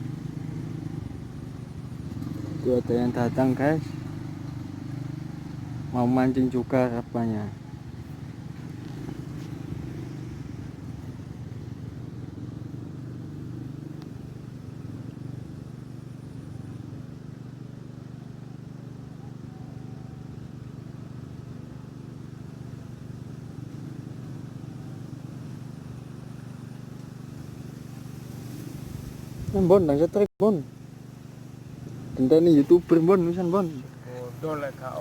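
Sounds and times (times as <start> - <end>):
small engine running steadily: 0.0 - 35.0.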